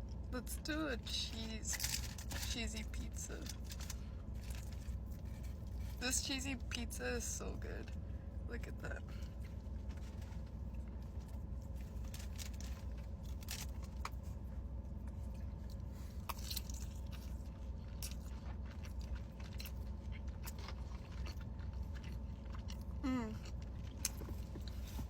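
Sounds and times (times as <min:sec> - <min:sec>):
steady low hum: 0:00.0 - 0:25.0
person chewing bread: 0:03.5 - 0:06.0, 0:09.1 - 0:25.0.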